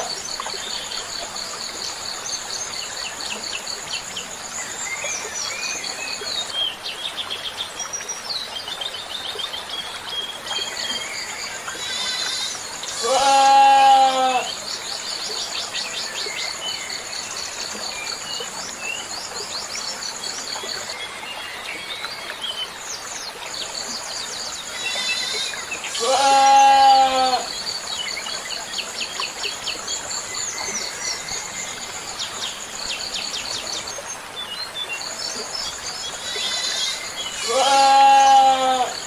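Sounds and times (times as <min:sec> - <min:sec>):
goat bleating: 0:11.9 - 0:14.5, 0:26.0 - 0:27.4, 0:37.4 - 0:38.9.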